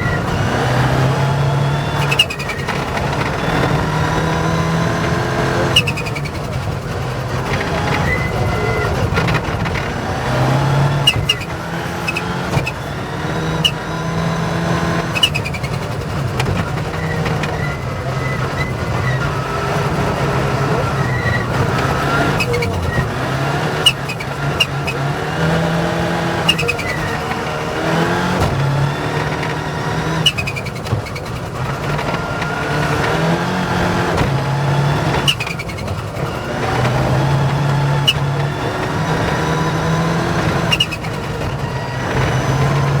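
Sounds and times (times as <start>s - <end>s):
rally car engine revving: 0.0s - 43.0s
sharp clicks and knocks: 15.0s - 25.7s.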